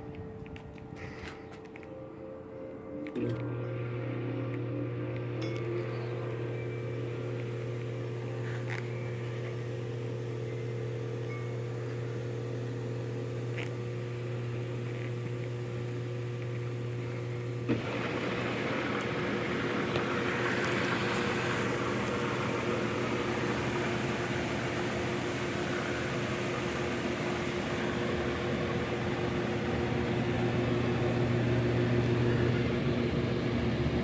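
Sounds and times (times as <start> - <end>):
pump motor humming: 3.0 - 34.0
rushing water hiss: 17.7 - 27.8.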